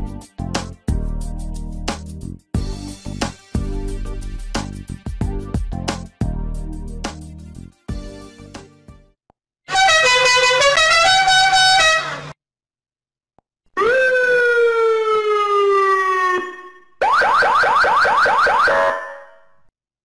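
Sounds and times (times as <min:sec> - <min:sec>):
horn-like siren tone stepping pitches: 0:09.7 - 0:12.4, 0:13.8 - 0:19.4
fast rising whoop siren: 0:13.8 - 0:19.4
long siren tone sliding down: 0:13.8 - 0:19.4.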